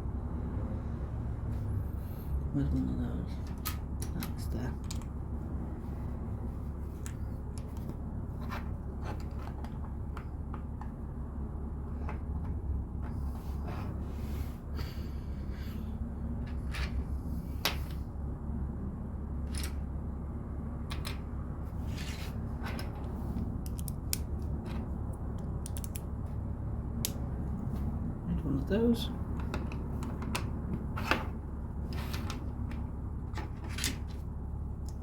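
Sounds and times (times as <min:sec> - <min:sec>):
low background hum: 0:00.0 - 0:35.0
plastic bricks clicking: 0:23.6 - 0:24.8, 0:25.7 - 0:26.0.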